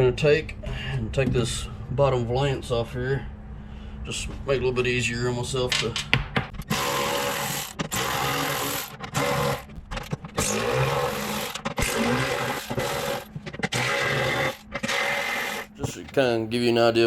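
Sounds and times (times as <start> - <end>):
power tool bursts: 6.6 - 9.7, 10.3 - 15.9.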